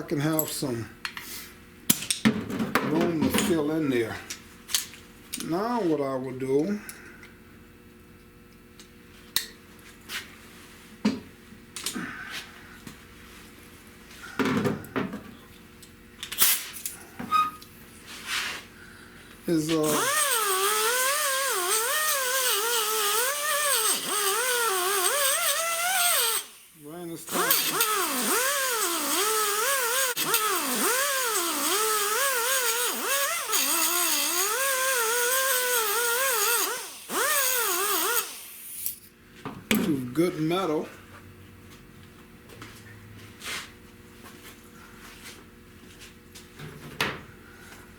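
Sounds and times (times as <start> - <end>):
electric grinder grinding metal: 19.6 - 39.0.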